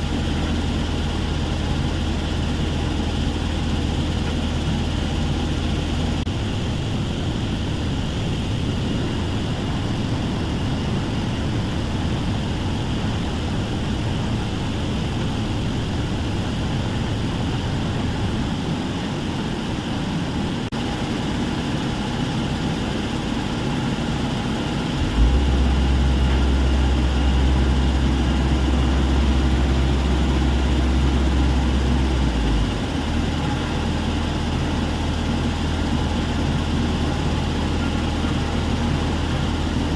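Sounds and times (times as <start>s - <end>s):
deep low rumble: 0.0s - 20.7s, 24.0s - 39.9s
heavy diesel machinery running: 0.0s - 39.9s.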